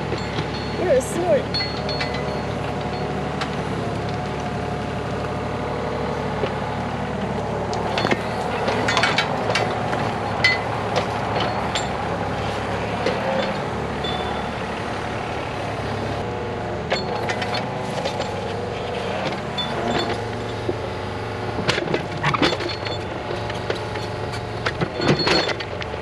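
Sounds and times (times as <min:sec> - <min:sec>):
sharp knocks and clinks: 0:00.0 - 0:04.2, 0:07.8 - 0:14.6, 0:16.9 - 0:18.6
engine running: 0:00.0 - 0:26.0.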